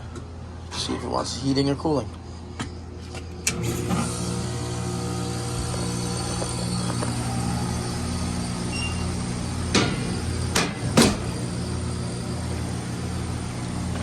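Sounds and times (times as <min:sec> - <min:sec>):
heat pump electrical hum: 0:00.0 - 0:14.0
sharp knocks: 0:10.6 - 0:11.4.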